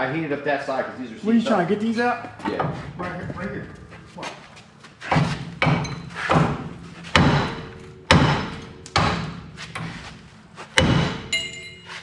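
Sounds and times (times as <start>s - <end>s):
sledgehammer striking steel: 5.1s - 11.8s.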